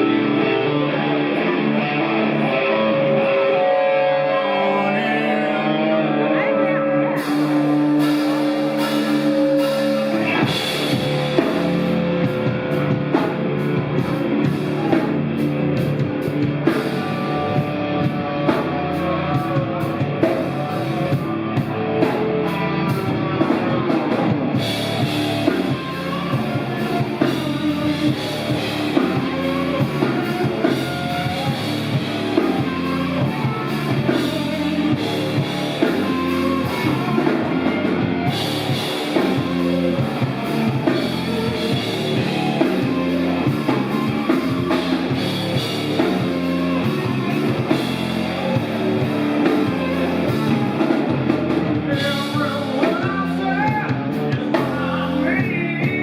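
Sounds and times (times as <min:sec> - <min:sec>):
live rock band playing: 0:00.0 - 0:56.0.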